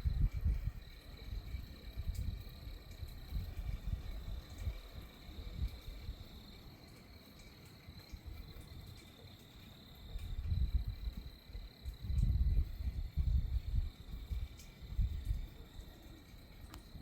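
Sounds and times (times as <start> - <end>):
wind buffeting microphone: 0.0 - 6.3, 10.0 - 17.0
insects trilling: 0.0 - 17.0.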